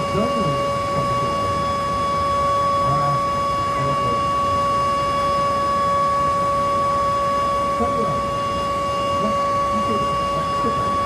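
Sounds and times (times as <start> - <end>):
warning siren steady tone: 0.0 - 11.0
faint voice: 0.1 - 1.5, 2.9 - 3.2, 3.8 - 4.2, 9.2 - 11.0.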